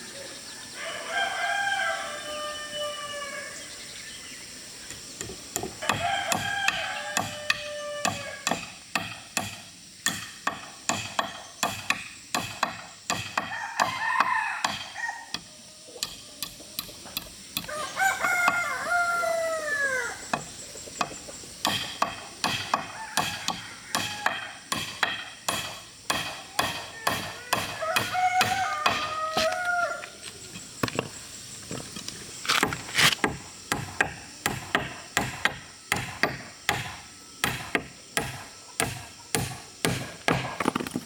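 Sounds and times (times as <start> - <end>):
rooster crowing: 0.5 - 3.8, 5.8 - 8.6, 13.4 - 15.4, 17.6 - 20.4, 22.7 - 24.7, 26.7 - 30.4
tool striking wood: 7.2 - 14.0, 20.3 - 29.6, 32.5 - 41.0.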